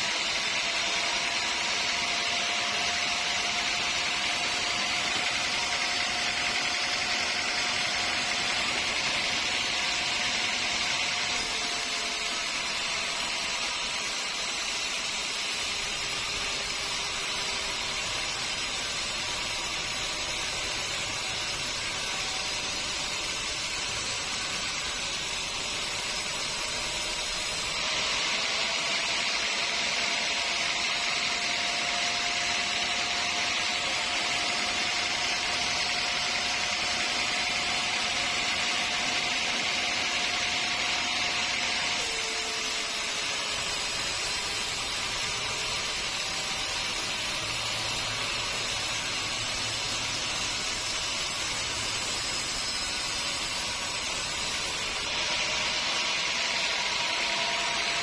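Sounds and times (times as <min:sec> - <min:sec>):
saw whine cutting log: 0:00.0 - 0:58.0
sawmill machinery hiss: 0:11.2 - 0:27.9, 0:42.0 - 0:56.1.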